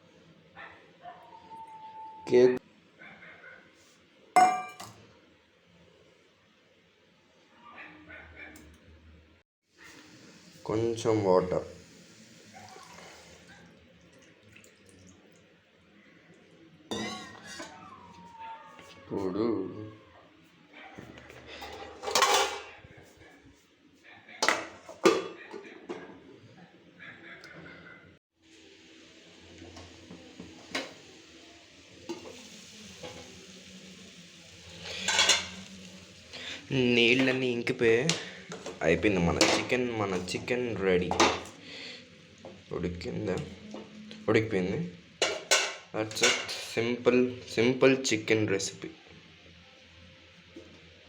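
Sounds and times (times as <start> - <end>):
water hissing in hot pan: 9.7 - 13.6, 28.4 - 39.2.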